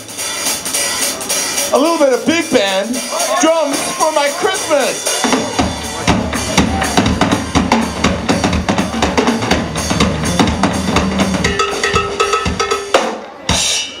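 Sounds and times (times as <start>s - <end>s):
drum kit playing: 0.0s - 14.0s
electric bass line: 4.6s - 12.8s.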